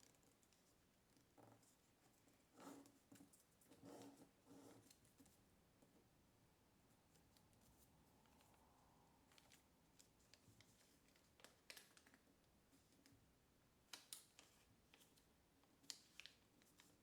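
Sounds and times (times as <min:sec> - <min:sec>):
paper rustling and crackling: 0:09.3 - 0:13.1, 0:13.9 - 0:17.0.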